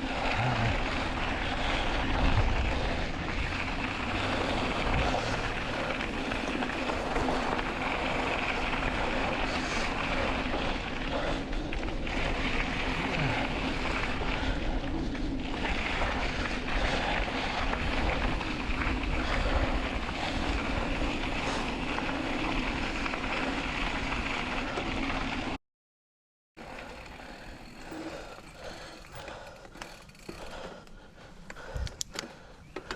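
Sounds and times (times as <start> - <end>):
bike tyres rattling: 0.0 - 25.6, 26.6 - 32.9
wind rushing over microphone: 1.1 - 8.0.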